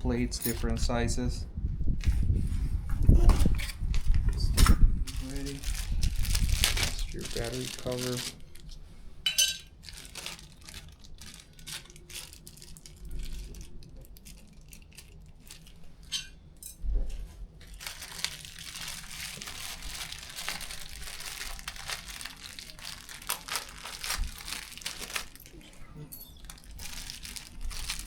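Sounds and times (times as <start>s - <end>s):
packaging crinkling: 5.1s - 8.8s, 9.6s - 16.1s, 17.6s - 25.7s, 26.3s - 28.0s.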